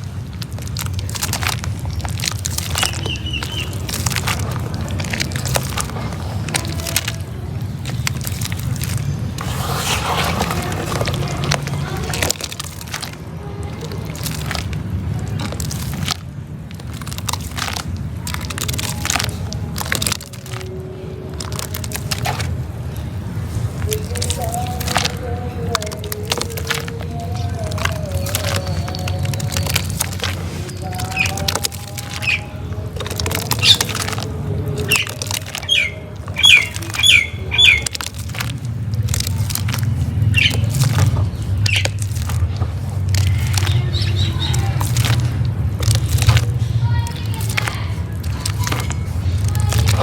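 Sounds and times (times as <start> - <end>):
cement crumbling and crunching: 0.0 - 50.0
bird chirping: 2.6 - 4.6, 27.1 - 38.0, 40.2 - 42.0, 43.3 - 45.2.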